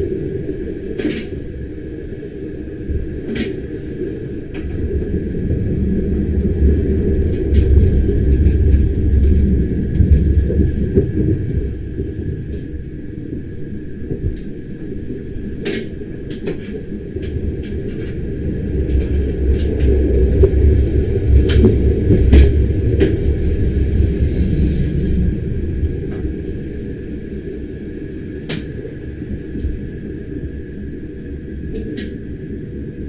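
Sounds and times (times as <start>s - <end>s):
train wheels rumbling on rail: 0.0s - 33.0s.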